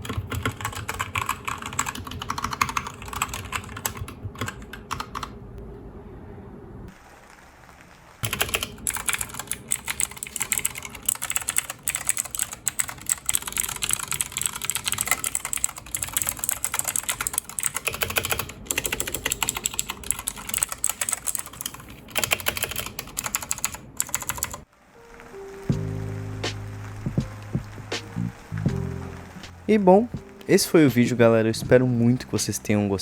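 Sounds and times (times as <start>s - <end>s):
fast typing on mechanical keyboard: 0.0s - 5.4s, 8.2s - 24.7s.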